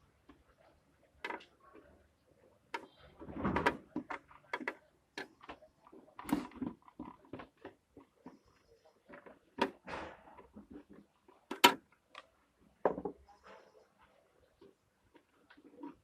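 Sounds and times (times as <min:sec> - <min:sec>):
plastic clicks and knocks: 0:02.7 - 0:08.4, 0:09.1 - 0:13.2.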